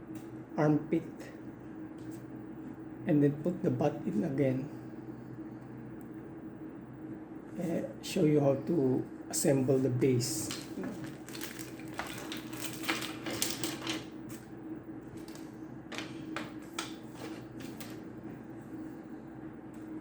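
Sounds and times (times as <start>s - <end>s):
steady low hum: 0.0s - 20.0s
plastic parts clicking and rustling: 10.4s - 14.1s.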